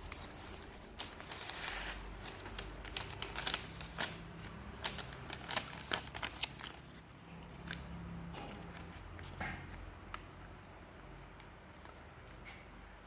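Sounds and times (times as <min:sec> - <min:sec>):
packaging being opened: 0:00.0 - 0:07.8.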